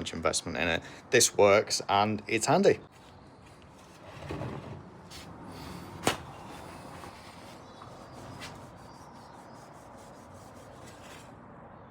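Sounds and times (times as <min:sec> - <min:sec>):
faint rubbing handling noise: 0:02.9 - 0:11.4.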